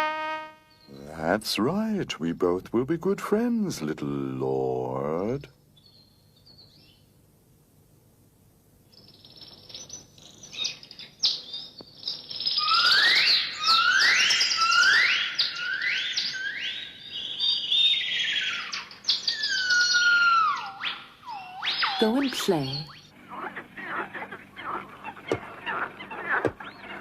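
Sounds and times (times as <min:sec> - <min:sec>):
bird-like chirping whistles: 0:09.0 - 0:23.1.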